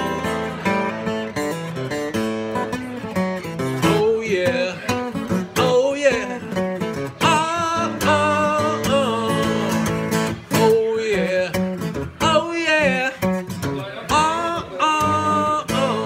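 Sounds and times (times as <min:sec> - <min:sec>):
blues-rock music: 0:00.0 - 0:14.2
electric guitar bending notes: 0:00.0 - 0:16.0
person singing: 0:03.8 - 0:11.6, 0:14.1 - 0:16.0.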